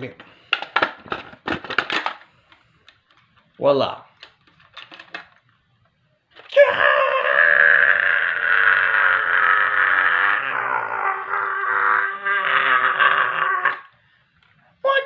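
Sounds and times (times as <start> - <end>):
long scream: 6.5 - 13.9.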